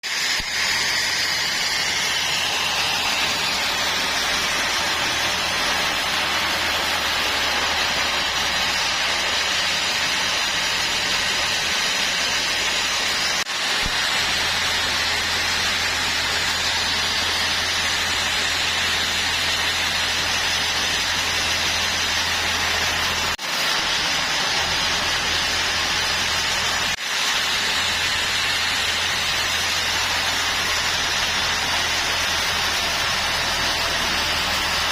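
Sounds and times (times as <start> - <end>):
saw hissing through wood: 0.0 - 34.9
sawmill motor hum: 0.0 - 34.9.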